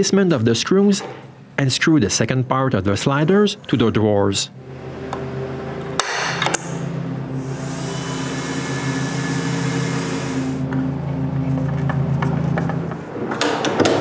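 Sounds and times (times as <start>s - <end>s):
electric drill driving screws: 7.4s - 10.7s.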